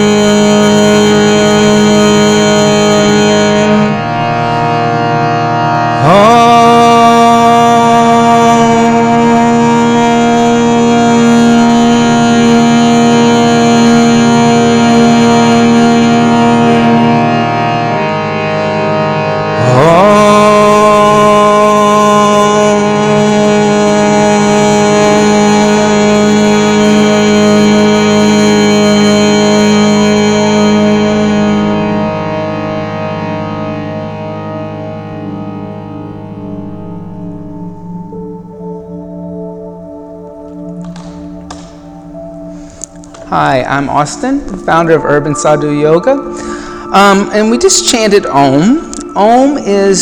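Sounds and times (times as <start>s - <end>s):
harmonium drone: 0.0s - 50.0s
person chanting om: 0.0s - 50.0s.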